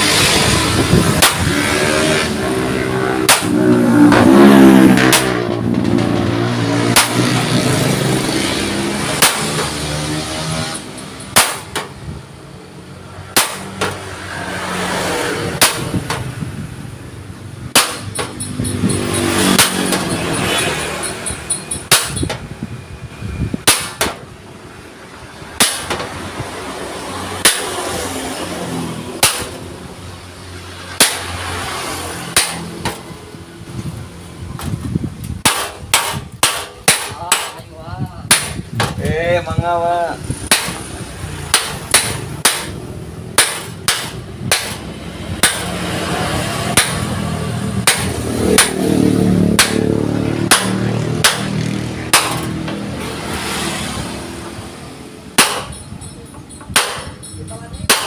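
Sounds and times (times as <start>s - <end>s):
passing motor vehicle: 0.0s - 36.8s, 37.6s - 58.0s
hammer clanging on steel plate: 17.8s - 22.4s, 55.4s - 58.0s.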